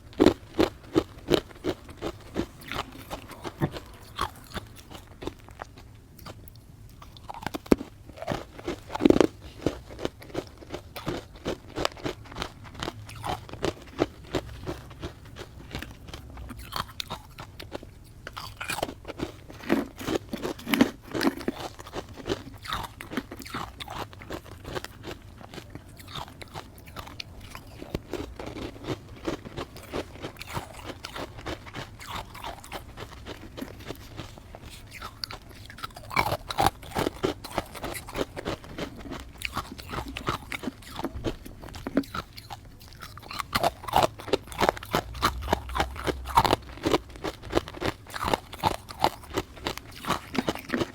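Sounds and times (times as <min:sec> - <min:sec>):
crunching ice: 0:18.3 - 0:50.9.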